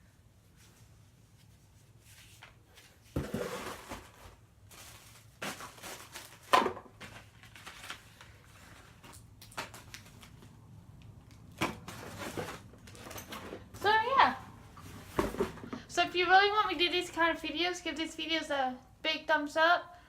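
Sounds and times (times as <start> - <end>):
packaging rustling and crinkling: 2.1 - 13.8.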